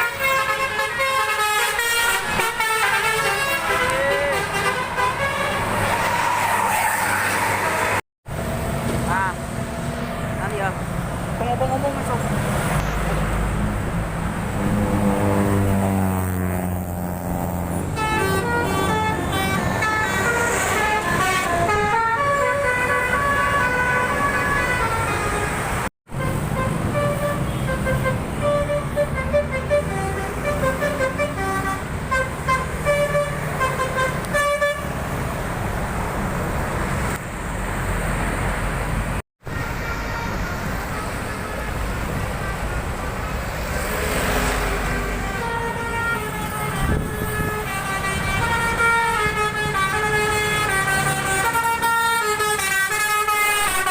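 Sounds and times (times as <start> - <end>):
bus horns playing melodies: 0.0 - 5.9, 14.6 - 35.0, 39.4 - 53.9
bus engines rumbling: 0.0 - 53.9.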